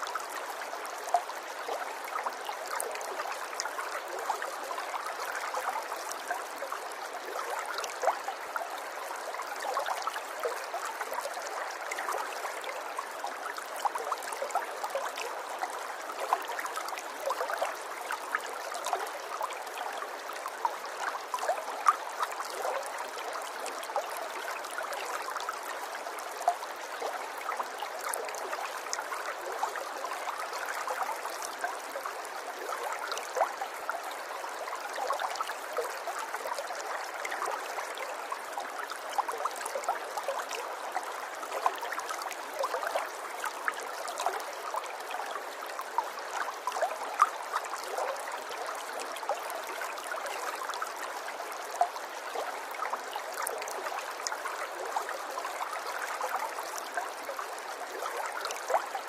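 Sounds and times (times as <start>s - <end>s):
river water babbling over stones: 0.0s - 59.0s.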